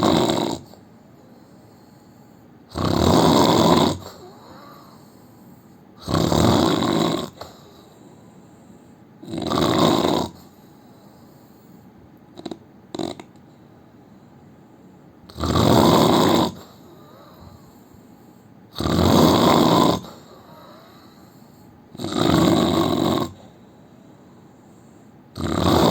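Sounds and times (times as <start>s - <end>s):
man snoring: 0.0s - 0.8s, 2.7s - 5.2s, 6.0s - 7.7s, 9.2s - 10.4s, 12.4s - 13.3s, 15.3s - 17.6s, 18.8s - 21.0s, 22.0s - 23.4s, 25.4s - 25.9s.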